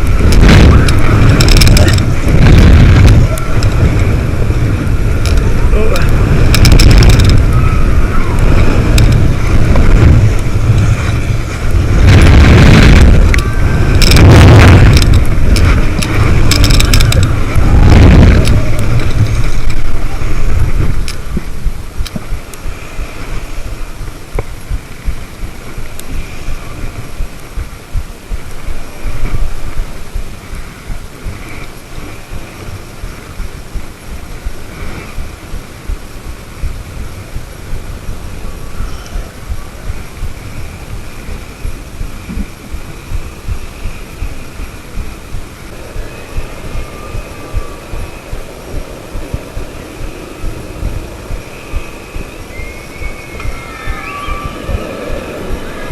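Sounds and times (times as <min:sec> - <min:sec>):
loud rushing whooshes: 0:00.0 - 0:55.9
wind buffeting microphone: 0:00.0 - 0:55.9.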